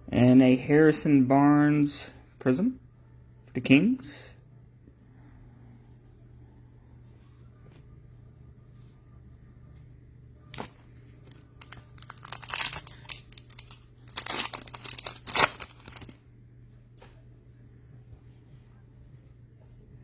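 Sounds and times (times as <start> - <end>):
wrapper tearing and crinkling: 10.5 - 16.2.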